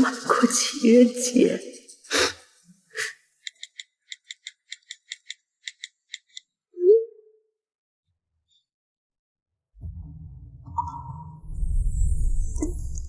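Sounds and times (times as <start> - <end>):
low sound rising in pitch: 9.8 - 13.0.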